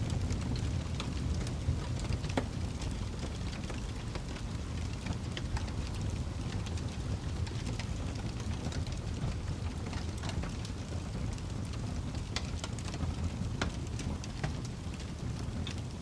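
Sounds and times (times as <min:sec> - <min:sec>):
burning wood crackling: 0:00.0 - 0:16.0
low rumble of flames: 0:00.0 - 0:16.0.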